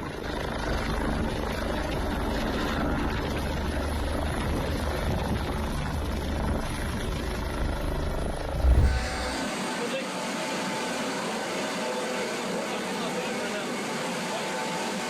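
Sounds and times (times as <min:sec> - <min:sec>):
helicopter landing: 0:08.2 - 0:09.5.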